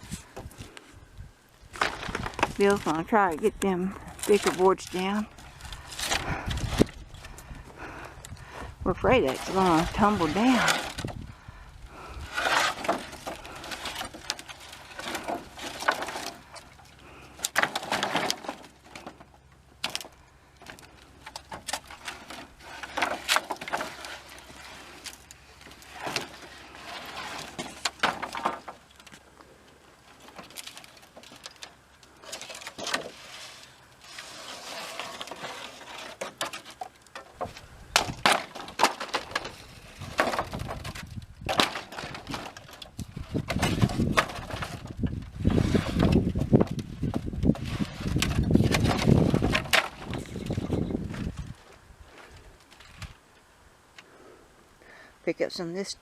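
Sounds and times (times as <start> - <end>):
wooden boards knocking and clattering: 1.7 - 3.0, 9.1 - 11.2, 12.3 - 16.8, 17.4 - 29.2, 34.9 - 51.5.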